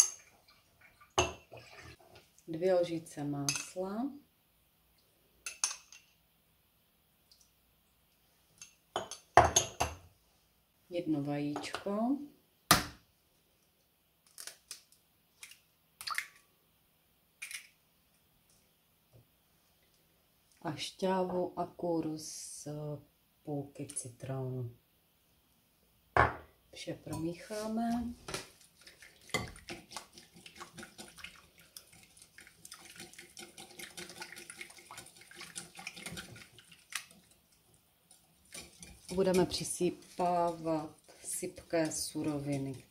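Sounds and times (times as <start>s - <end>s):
wet squelches: 28.2s - 42.9s
utensil scraping bowl: 38.1s - 42.9s.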